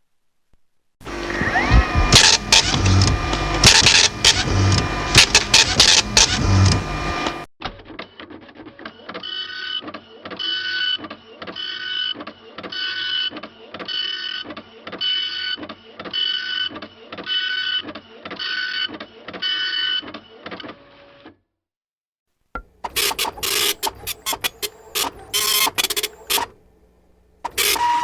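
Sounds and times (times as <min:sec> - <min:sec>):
printer printing with whine: 0:01.0 - 0:07.5, 0:22.8 - 0:28.0.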